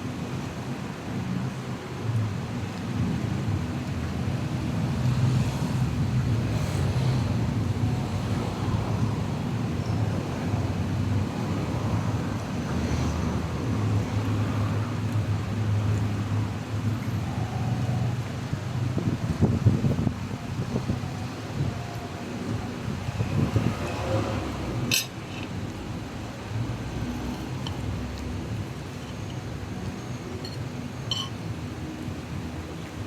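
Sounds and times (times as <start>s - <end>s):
wind noise on microphone: 1.1s - 26.7s.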